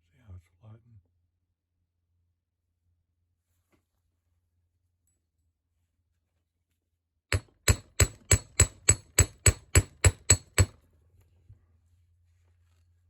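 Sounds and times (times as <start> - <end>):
small hammer striking metal: 7.3 - 10.8.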